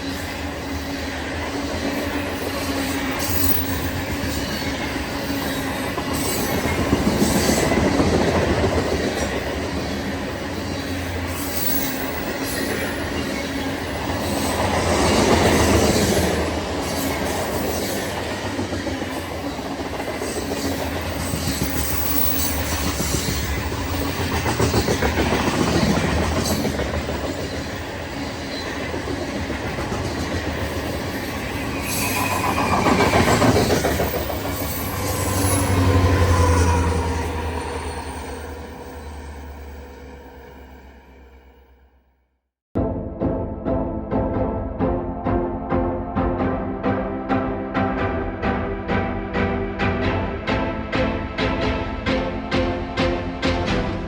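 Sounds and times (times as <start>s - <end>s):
train wheels rumbling on rails: 0.0s - 40.7s.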